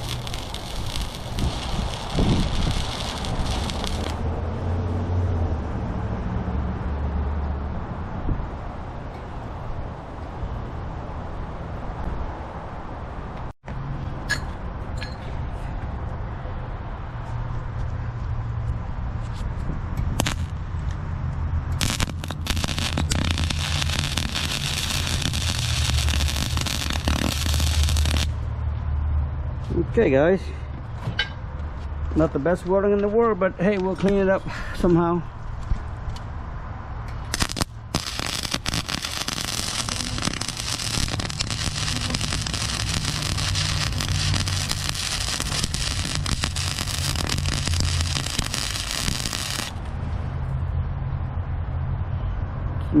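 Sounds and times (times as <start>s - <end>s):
welder arc crackling: 0.0s - 4.3s, 20.2s - 20.6s, 21.8s - 28.4s, 37.2s - 49.8s.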